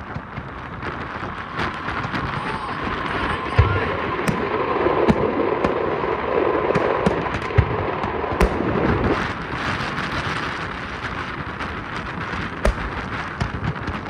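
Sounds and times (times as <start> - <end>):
fireworks crackling: 0.0 - 14.0
firework shell thumps: 8.4 - 9.2, 12.7 - 13.5.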